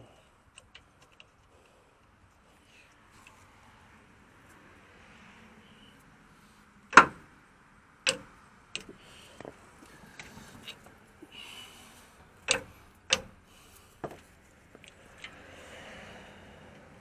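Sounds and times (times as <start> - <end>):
sharp knocks of hard tools: 7.0 - 7.2
light clicks: 12.4 - 15.5.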